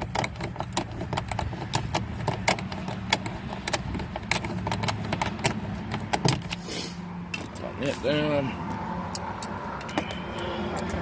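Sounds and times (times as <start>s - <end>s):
plastic parts clicking and tapping: 0.0s - 6.6s.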